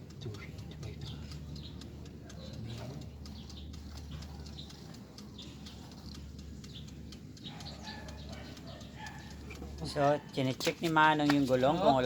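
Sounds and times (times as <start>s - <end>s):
faint clicks: 0.0s - 12.0s
small birds chirping: 0.0s - 12.0s
steady low hum: 0.0s - 12.0s.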